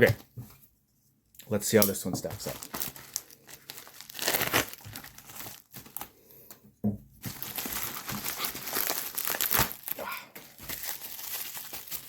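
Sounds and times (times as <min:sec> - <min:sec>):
packaging crinkling and rustling: 0:02.2 - 0:06.2, 0:07.2 - 0:12.0.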